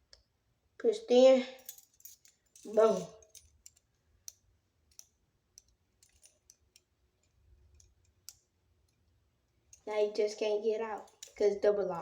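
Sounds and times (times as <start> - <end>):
handcuffs clicking: 1.6 - 9.9, 11.0 - 11.4.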